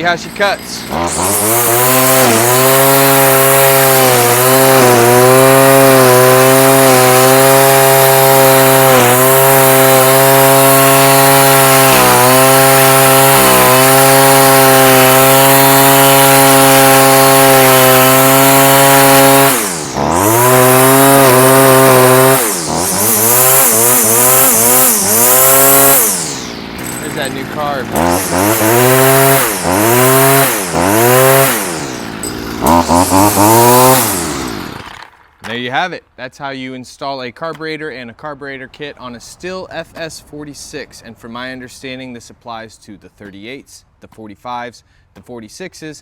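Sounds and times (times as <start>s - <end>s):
string trimmer engine revving: 0.0s - 35.2s.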